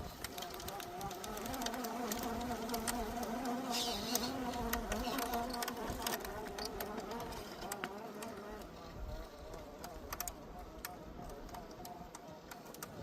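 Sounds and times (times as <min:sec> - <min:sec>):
electric motor and gearbox whining: 0:00.0 - 0:08.8
sharp clicks: 0:00.1 - 0:08.8, 0:09.5 - 0:13.0.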